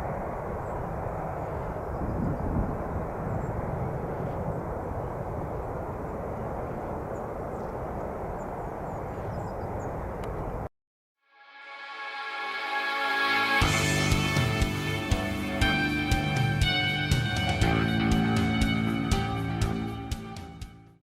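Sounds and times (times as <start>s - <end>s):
music: 11.2s - 21.0s
jet engines rumbling: 12.6s - 20.5s.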